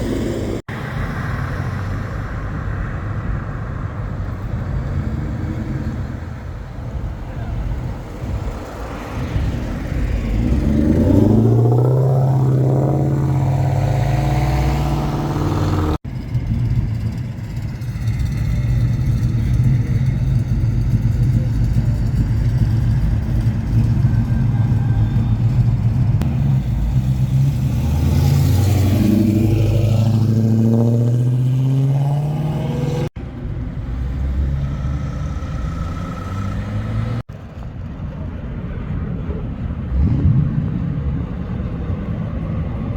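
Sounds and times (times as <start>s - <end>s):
car engine revving: 9.8s - 16.0s, 17.1s - 37.3s.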